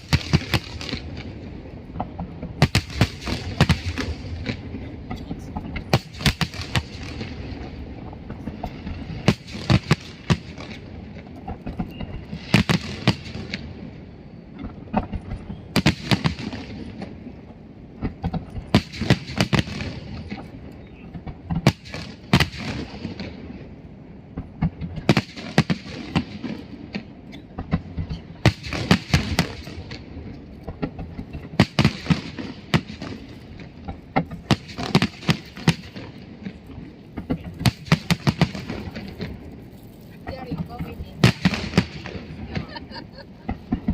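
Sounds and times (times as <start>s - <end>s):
fireworks bangs and crackles: 0.0s - 43.9s.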